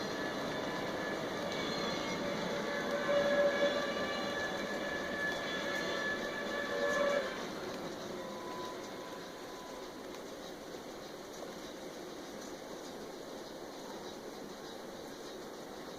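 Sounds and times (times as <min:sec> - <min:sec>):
train horn: 0:00.0 - 0:10.2
train running rumble: 0:00.0 - 0:15.9.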